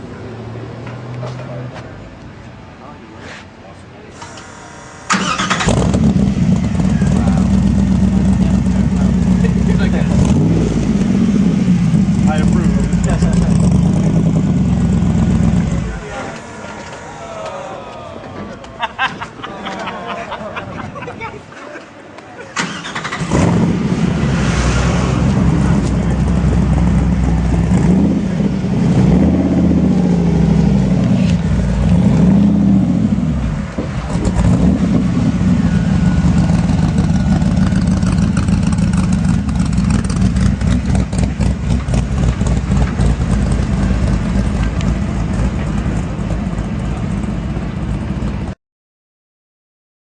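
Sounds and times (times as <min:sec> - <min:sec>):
car engine revving and idling: 0:04.7 - 0:17.2, 0:22.7 - 0:48.6.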